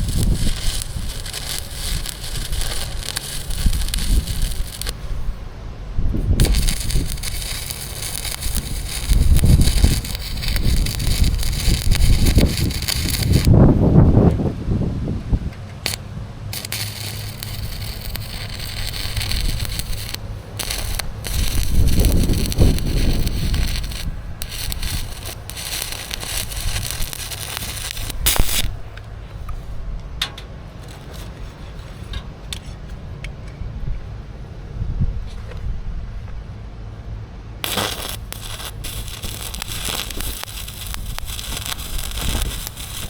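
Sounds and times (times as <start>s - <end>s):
arc welding crackling hiss: 0.0s - 5.4s, 6.2s - 13.6s, 15.8s - 16.0s, 16.6s - 29.0s, 37.6s - 43.0s
electrical hum: 0.0s - 14.8s, 15.4s - 29.3s, 37.6s - 43.0s.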